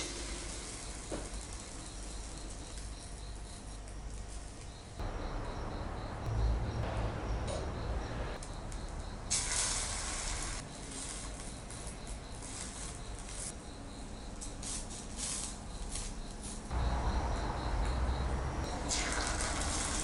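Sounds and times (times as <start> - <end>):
egg and oil sizzling in a pan: 0.0 - 2.6, 9.3 - 11.4.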